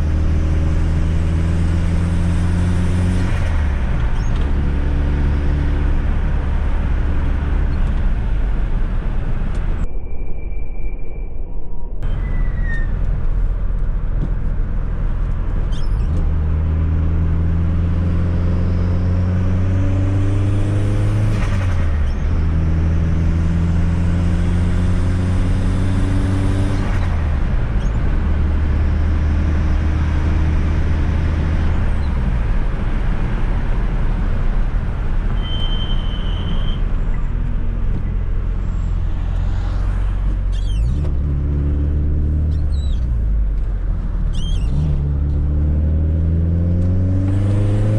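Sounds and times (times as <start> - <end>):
car engine accelerating: 0.0 - 9.9, 12.0 - 35.4, 36.8 - 47.9
road noise: 0.0 - 47.9.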